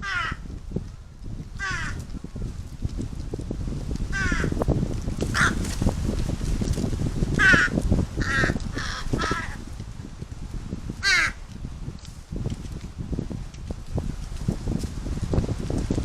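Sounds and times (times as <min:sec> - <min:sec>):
crows cawing: 0:00.0 - 0:00.5, 0:01.6 - 0:02.0, 0:04.1 - 0:04.6, 0:05.4 - 0:05.6, 0:07.4 - 0:09.6, 0:11.0 - 0:11.4
strong wind rumble: 0:00.0 - 0:16.0.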